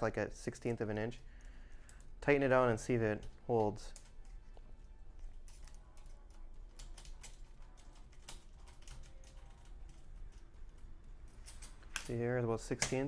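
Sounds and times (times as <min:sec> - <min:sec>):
metal hardware clicks and taps: 0:05.2 - 0:13.0.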